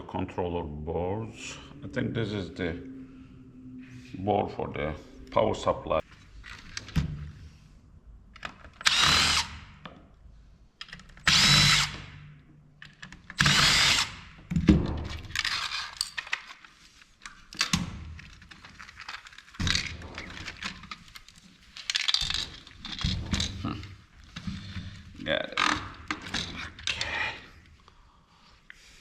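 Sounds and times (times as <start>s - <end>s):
power drill motor whine: 8.8s - 9.6s, 11.3s - 12.0s, 13.4s - 14.1s
metal parts clicking and rattling: 15.1s - 24.8s.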